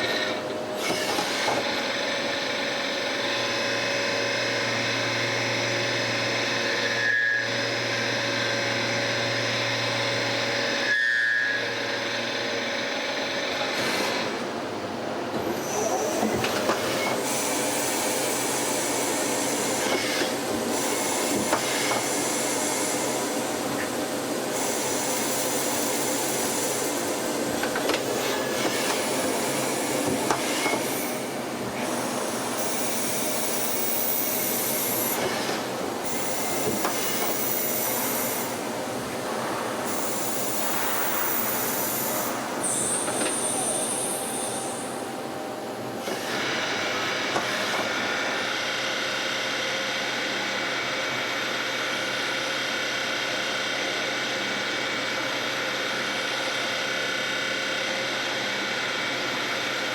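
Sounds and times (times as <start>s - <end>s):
high machine whines: 0.0s - 14.4s, 15.5s - 59.9s
machine cutting hiss: 15.6s - 38.7s, 39.3s - 45.1s.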